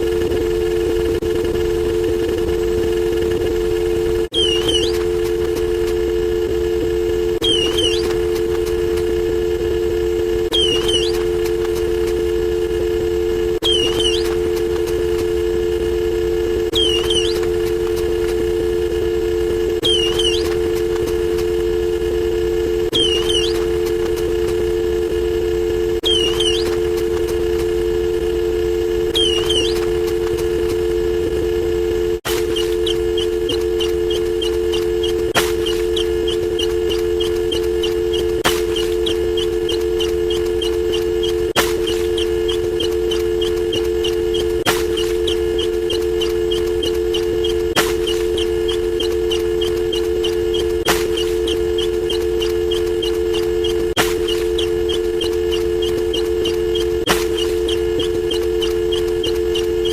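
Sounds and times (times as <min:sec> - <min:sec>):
two-note hum: 0:00.0 - 0:59.9
short rising chirps: 0:04.3 - 0:05.8, 0:07.4 - 0:08.9, 0:10.4 - 0:12.1, 0:13.5 - 0:15.4, 0:16.6 - 0:19.0, 0:19.6 - 0:22.0, 0:22.6 - 0:25.2, 0:25.8 - 0:31.4
short chirping sweeps: 0:04.4 - 0:05.0, 0:10.5 - 0:11.3, 0:13.6 - 0:14.4, 0:16.7 - 0:17.5, 0:19.8 - 0:20.6, 0:22.9 - 0:23.8, 0:26.0 - 0:26.8, 0:29.1 - 0:30.0.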